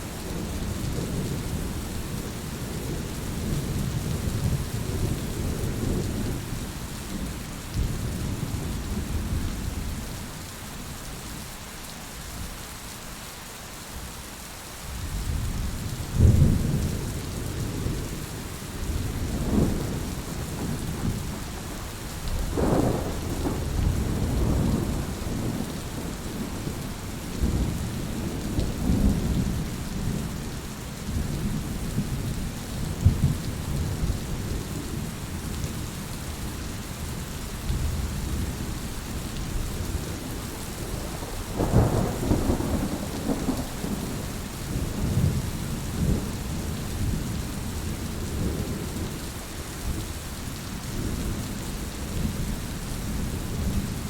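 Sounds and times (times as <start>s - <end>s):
heavy rain falling: 0.0s - 54.0s
thunder rumbling: 18.8s - 30.4s, 39.4s - 47.2s.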